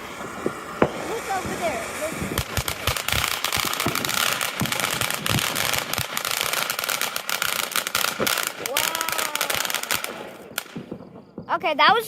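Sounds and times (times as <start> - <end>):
fireworks crackling: 0.0 - 12.0
low thuds: 8.1 - 8.8.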